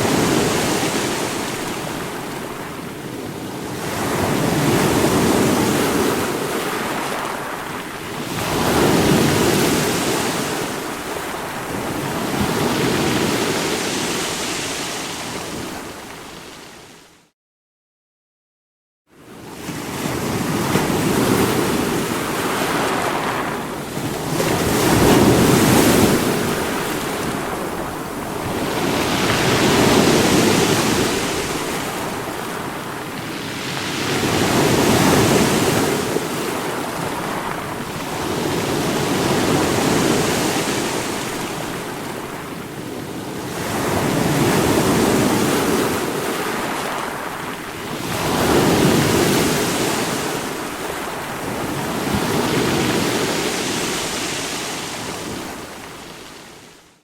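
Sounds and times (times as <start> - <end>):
ocean surf breaking: 20.2 - 42.4.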